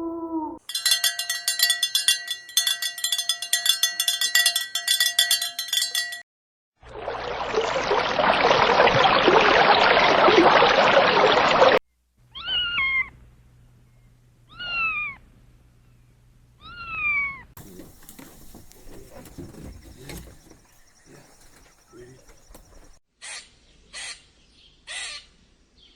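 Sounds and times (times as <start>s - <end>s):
cat meowing: 12.4s - 13.1s.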